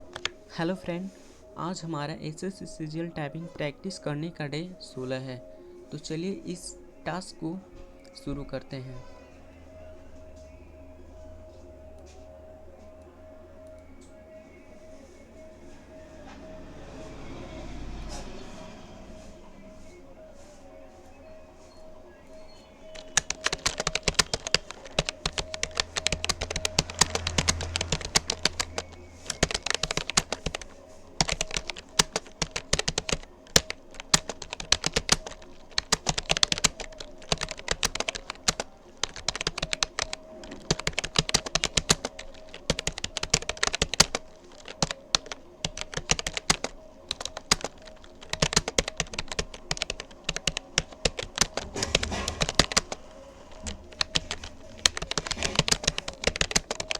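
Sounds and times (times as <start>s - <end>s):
faint steady hum: 0.0s - 56.9s
keyboard key clicks: 23.0s - 56.9s.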